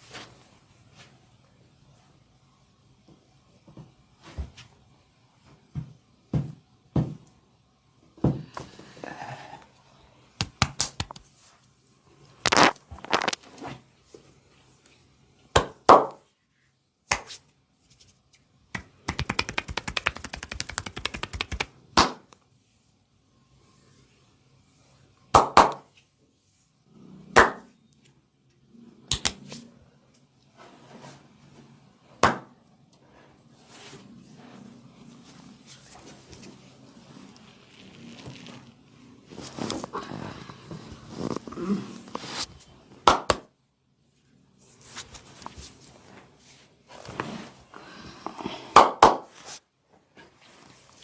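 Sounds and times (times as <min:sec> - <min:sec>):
hands slapping body: 0:10.4 - 0:11.3, 0:17.1 - 0:17.4, 0:18.7 - 0:22.2, 0:29.1 - 0:29.5, 0:43.0 - 0:43.5, 0:48.8 - 0:49.3.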